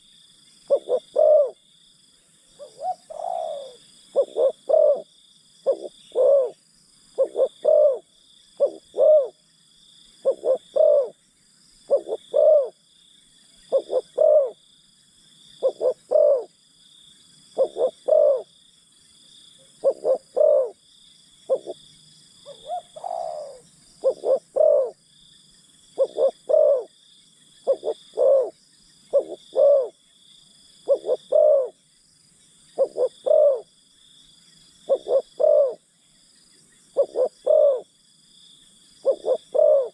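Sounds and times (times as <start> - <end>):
high insect buzz: 0.0 - 39.9
dove cooing: 0.7 - 1.6, 2.6 - 9.4, 10.2 - 11.2, 11.9 - 12.8, 13.6 - 14.6, 15.6 - 16.5, 17.6 - 18.5, 19.7 - 20.8, 21.5 - 21.8, 22.4 - 25.0, 26.0 - 26.9, 27.6 - 30.0, 30.8 - 31.8, 32.8 - 33.7, 34.9 - 35.8, 36.9 - 37.9, 39.0 - 39.9.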